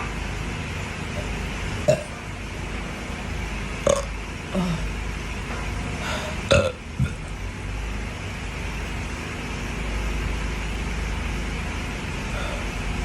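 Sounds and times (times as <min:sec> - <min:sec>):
steady background hum: 0:00.0 - 0:13.0
person burping: 0:01.9 - 0:02.2, 0:03.9 - 0:04.8, 0:06.5 - 0:07.2.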